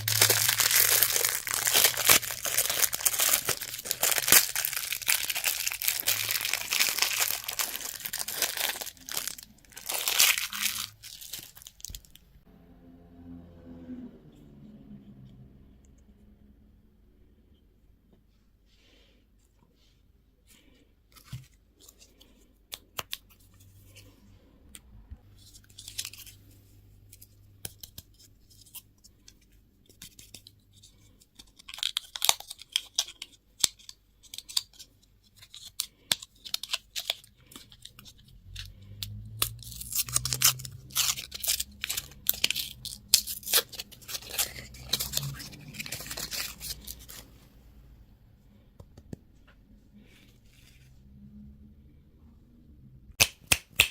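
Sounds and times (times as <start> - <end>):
plastic packaging crinkling: 0.0 - 12.2, 39.3 - 47.4.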